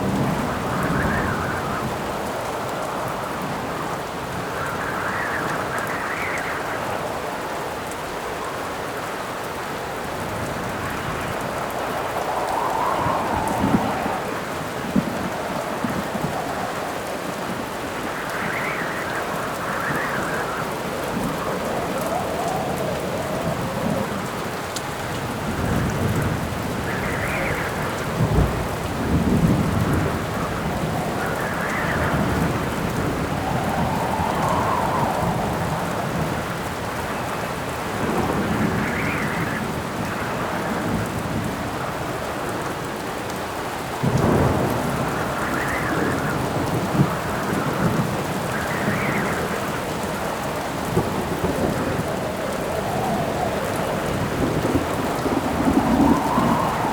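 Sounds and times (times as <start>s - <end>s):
howling wind: 0.0s - 56.9s
steady rain: 0.0s - 56.9s
thunder rolling: 10.2s - 42.0s, 44.0s - 56.9s.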